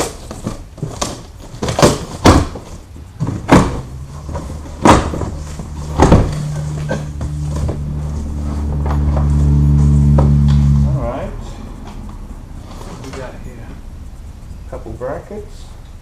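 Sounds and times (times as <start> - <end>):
knocks: 1.6 - 7.8
low hum: 2.9 - 16.0.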